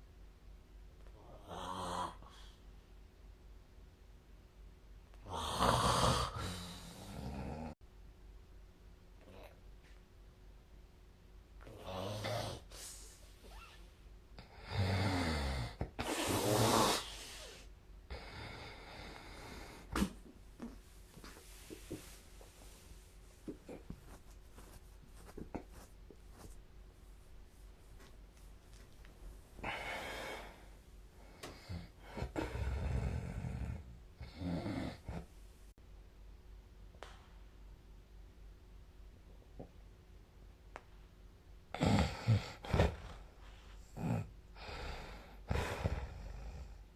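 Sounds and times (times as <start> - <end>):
quiet breathing: 1.1 - 2.9, 5.1 - 7.8, 11.6 - 35.8, 41.8 - 46.9
person snoring: 1.2 - 2.4, 5.2 - 7.8, 11.7 - 13.0, 14.4 - 20.1, 29.6 - 30.7, 31.4 - 35.3, 41.8 - 43.3, 43.9 - 46.9
breathy breath: 29.6 - 35.1, 42.1 - 46.9.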